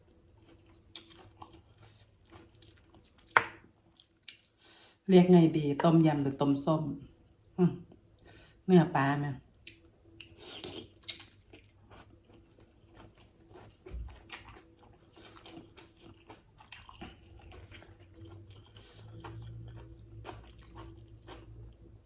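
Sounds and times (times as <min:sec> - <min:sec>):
person chewing: 0:00.3 - 0:04.7, 0:09.6 - 0:22.0.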